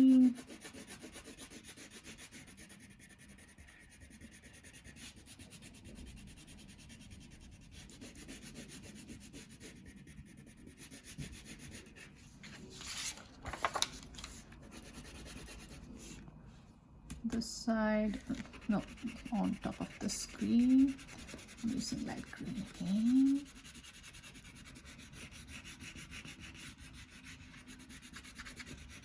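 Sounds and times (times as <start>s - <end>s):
crayon rubbing on paper: 0.0s - 12.2s, 14.6s - 16.2s, 18.0s - 29.0s
rustling scrapes: 12.0s - 14.6s.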